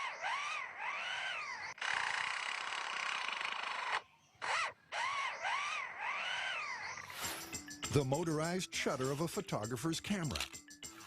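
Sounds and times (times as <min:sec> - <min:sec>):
lyrebird imitating a drill: 0:00.0 - 0:07.5.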